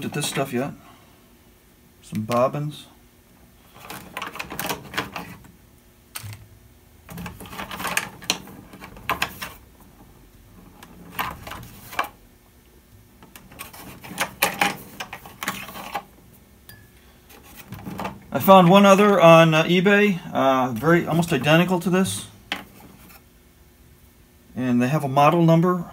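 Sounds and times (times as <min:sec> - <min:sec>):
sewing bobbins clicking and rattling: 0:03.8 - 0:05.4.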